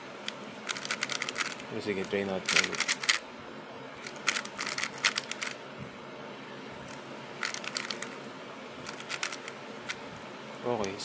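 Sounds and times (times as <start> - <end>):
speed cube layers clicking: 0.7 - 1.6, 2.5 - 3.2, 4.1 - 5.6, 8.9 - 9.5.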